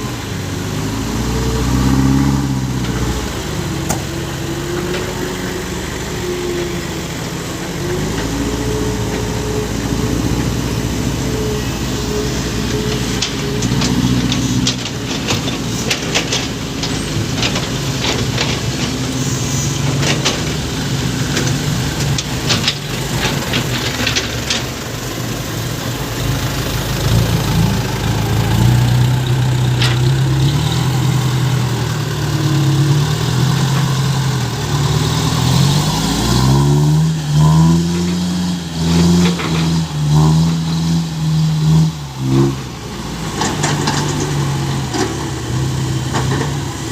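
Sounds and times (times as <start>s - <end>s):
engine revving: 0.0s - 24.9s, 25.8s - 46.9s
truck engine running: 0.0s - 46.9s
clicking and rattling: 12.7s - 19.2s, 19.8s - 24.8s.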